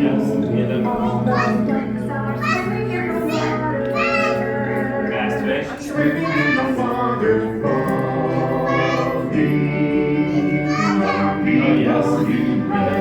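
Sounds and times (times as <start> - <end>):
children's song with vocals: 0.0 - 13.0.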